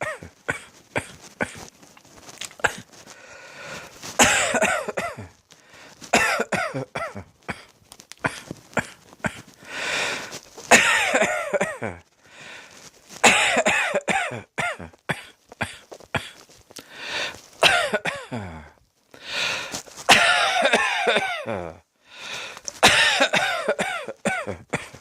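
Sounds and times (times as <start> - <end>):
person coughing: 0.0 - 1.7, 2.4 - 3.2, 3.8 - 5.4, 6.1 - 12.0, 13.2 - 16.4, 17.6 - 18.7, 19.4 - 21.8, 22.7 - 25.0.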